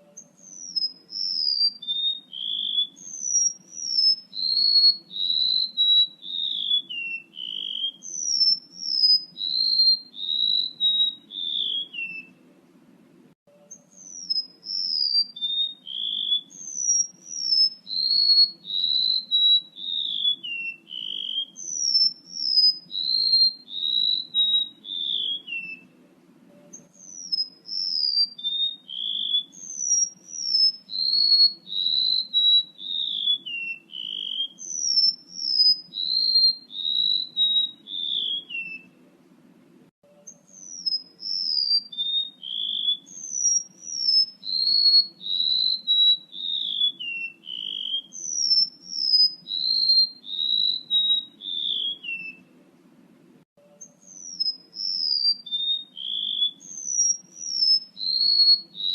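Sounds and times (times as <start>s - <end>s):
bird whistling song: 0.0s - 12.5s, 13.5s - 26.0s, 26.6s - 39.0s, 40.1s - 52.6s, 53.6s - 58.9s.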